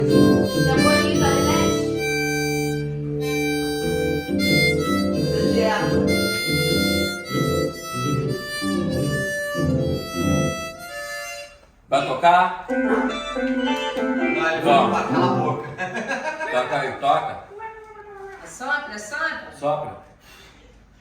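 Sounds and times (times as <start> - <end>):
harmonica playing chords: 0.0 - 11.9, 12.7 - 15.8.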